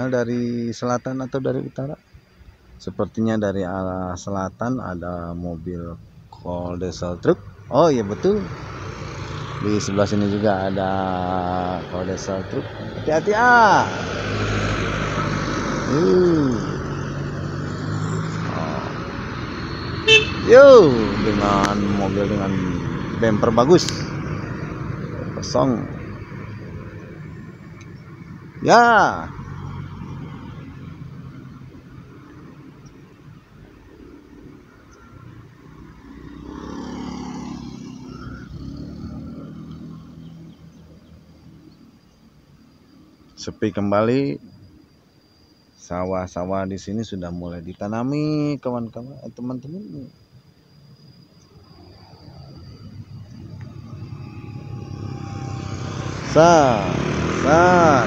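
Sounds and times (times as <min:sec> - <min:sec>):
tyre and road noise: 0:00.0 - 0:45.6, 0:49.8 - 0:58.0
vehicle passing by: 0:05.0 - 0:41.6, 0:51.0 - 0:58.0
truck diesel engine driving past: 0:05.3 - 0:41.6, 0:51.1 - 0:58.0
person calling out: 0:15.9 - 0:16.8, 0:54.1 - 0:58.0.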